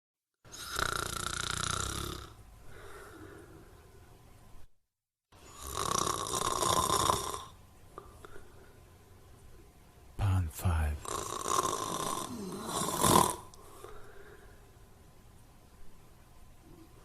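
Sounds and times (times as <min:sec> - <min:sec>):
quiet breath out: 0:02.6 - 0:03.9, 0:13.6 - 0:14.8
person snoring: 0:10.7 - 0:13.4.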